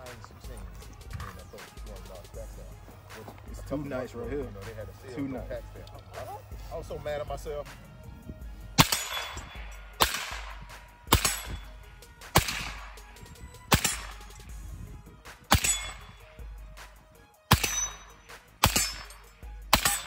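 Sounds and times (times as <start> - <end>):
rifle single shots: 8.8 - 14.5, 15.4 - 16.3, 17.5 - 20.0.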